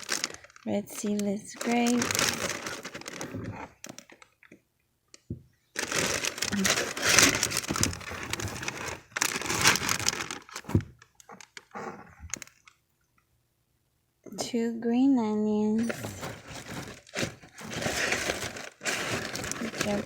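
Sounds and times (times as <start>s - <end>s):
food packaging crinkling: 0.0s - 4.5s, 5.8s - 12.8s, 15.8s - 20.0s.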